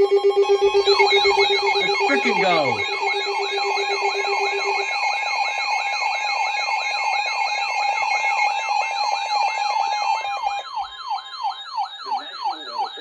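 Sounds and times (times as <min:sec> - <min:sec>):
warbling high tone: 0:00.0 - 0:04.9
siren-like tone sweeping down: 0:00.0 - 0:05.8
steady alert tones: 0:00.5 - 0:03.4.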